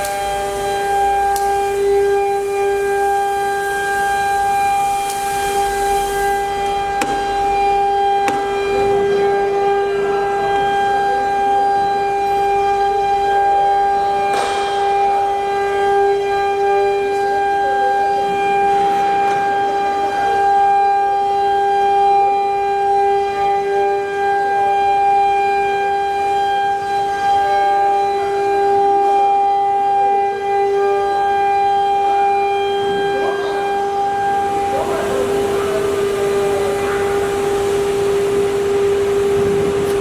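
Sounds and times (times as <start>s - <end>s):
router spindle whine: 26.8s - 40.0s.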